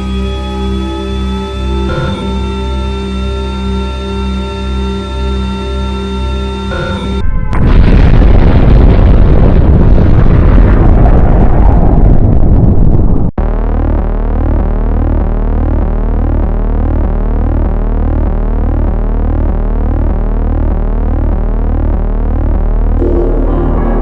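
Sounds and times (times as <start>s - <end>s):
pulsing low sine tone: 0.0s - 24.0s
explosion: 6.8s - 13.4s.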